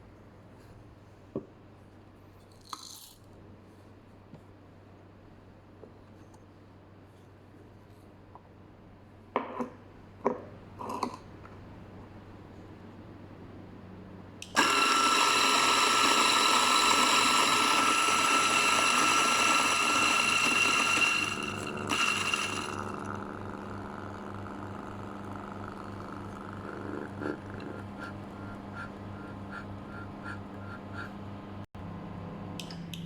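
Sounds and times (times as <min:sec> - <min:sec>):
coffee grinder whining: 0:14.4 - 0:31.1.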